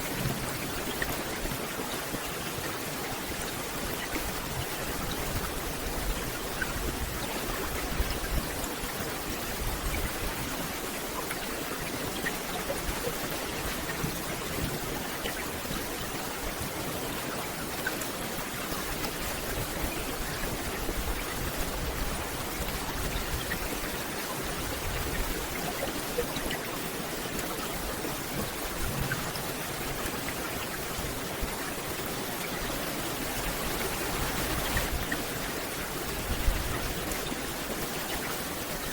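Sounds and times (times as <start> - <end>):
rain on forest canopy: 0.0 - 38.9
louder raindrops: 3.7 - 31.2.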